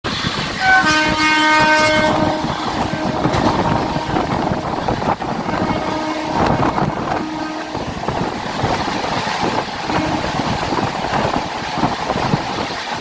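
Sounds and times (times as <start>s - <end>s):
train rumbling on track: 0.0s - 13.0s
train horn: 0.6s - 8.4s, 9.9s - 11.5s.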